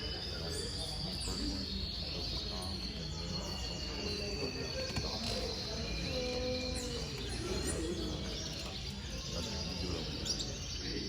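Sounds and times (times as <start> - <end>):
canaries chirping: 0.0 - 11.0.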